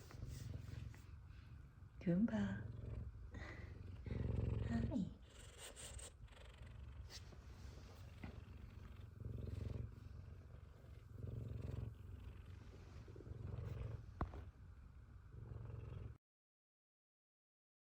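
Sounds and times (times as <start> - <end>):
cat purring: 0.0 - 16.2.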